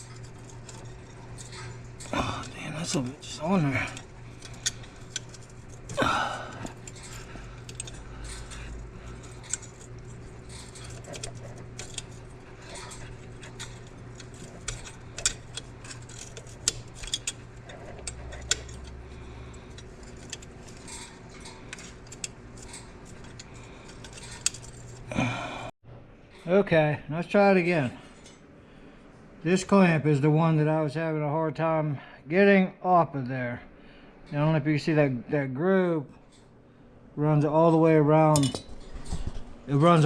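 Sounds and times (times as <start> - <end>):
metallic clicks of hand tools: 0.0 - 25.0
steady low hum: 0.0 - 40.0.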